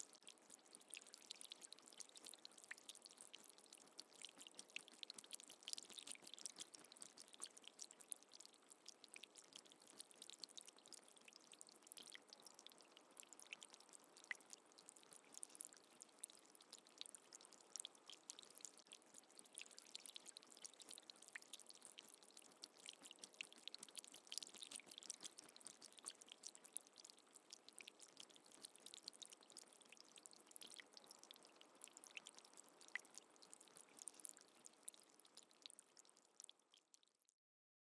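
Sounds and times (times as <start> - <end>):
water dripping: 0.0 - 37.3.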